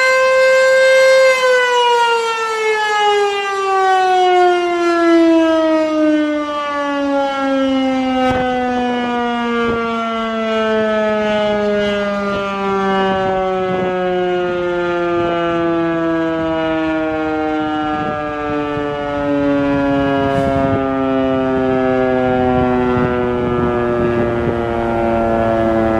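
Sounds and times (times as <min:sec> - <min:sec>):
warning siren wailing: 0:00.0 - 0:25.9.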